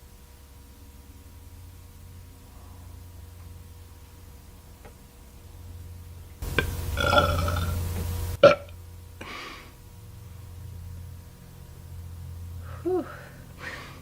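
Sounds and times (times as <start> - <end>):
woman belching: 6.6 - 7.8, 8.4 - 8.7.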